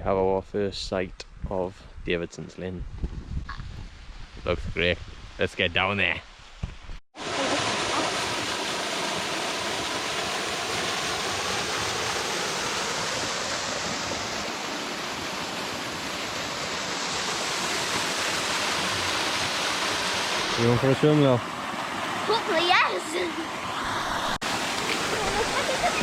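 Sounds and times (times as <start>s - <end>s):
small waterfall rushing: 7.2s - 26.0s.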